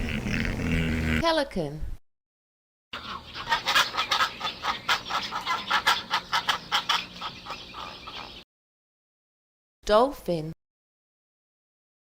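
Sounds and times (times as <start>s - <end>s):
pelican harsh clucking calls: 3.0s - 8.4s.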